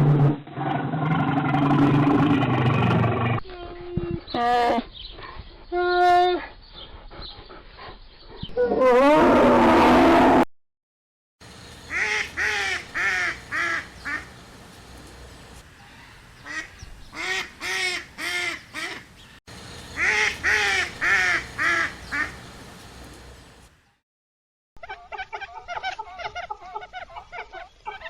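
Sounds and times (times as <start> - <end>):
duck quacking: 11.9 - 14.3, 20.0 - 22.4.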